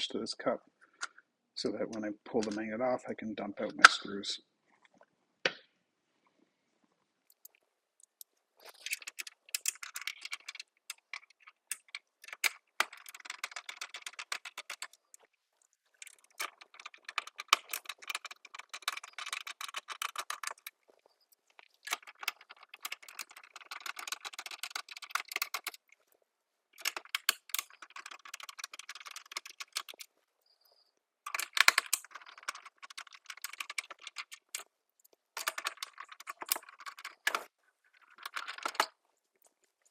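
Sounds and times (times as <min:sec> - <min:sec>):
plastic parts and tools rattling: 0:02.3 - 0:02.8, 0:07.3 - 0:15.3, 0:15.9 - 0:25.9, 0:26.8 - 0:30.2, 0:31.2 - 0:39.9.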